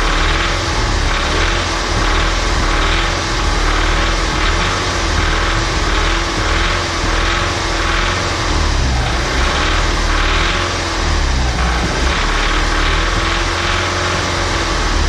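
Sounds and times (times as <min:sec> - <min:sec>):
car engine running: 0:00.0 - 0:15.0.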